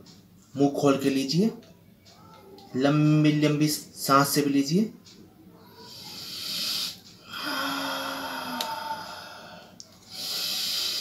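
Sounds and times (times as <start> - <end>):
man breathing deeply through mouth: 6.0 - 11.0.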